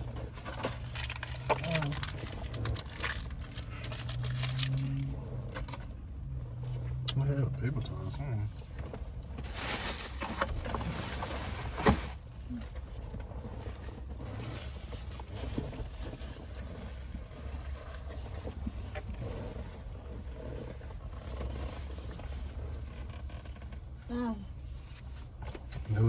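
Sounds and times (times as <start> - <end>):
low rumble: 0.0 - 24.8
paper wrapping rustling: 0.4 - 5.0, 9.4 - 12.2.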